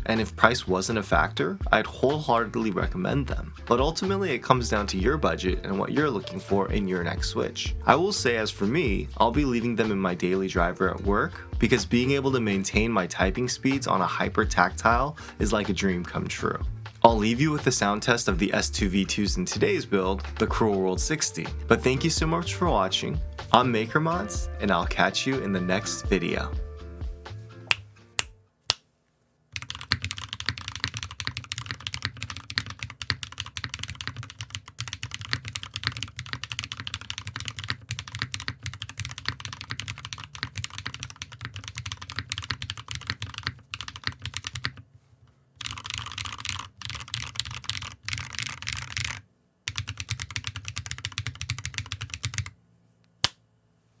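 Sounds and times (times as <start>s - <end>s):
fast mechanical keyboard typing: 29.6s - 44.8s, 45.6s - 52.5s.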